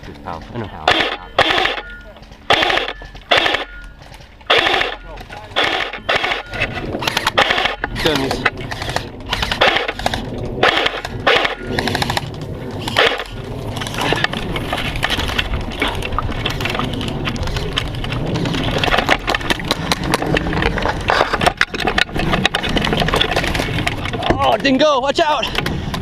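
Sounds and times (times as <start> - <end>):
airsoft guns firing: 0.8 - 3.9, 4.5 - 13.3.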